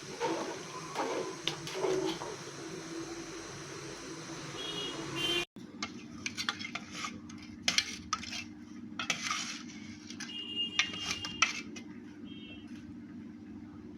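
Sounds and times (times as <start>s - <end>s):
metal spoon scraping a pot: 5.8s - 11.9s.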